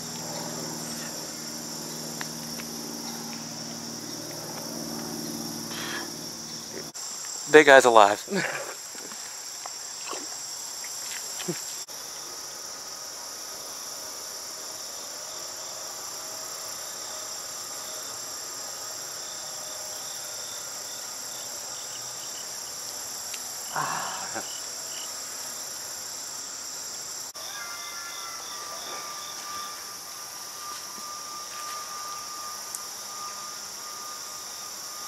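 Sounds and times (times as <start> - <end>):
insects chorus: 0.0 - 35.0.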